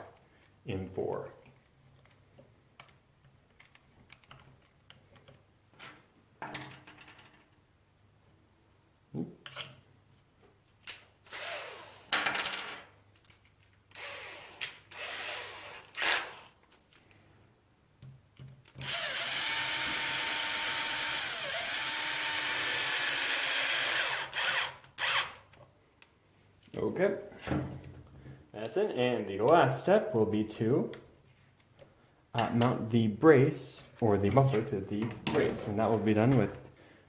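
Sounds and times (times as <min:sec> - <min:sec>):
small parts clicking and rustling: 0:01.5 - 0:07.6, 0:12.2 - 0:14.0, 0:16.6 - 0:17.3
cordless electric screwdriver running: 0:14.0 - 0:16.5, 0:18.8 - 0:25.3.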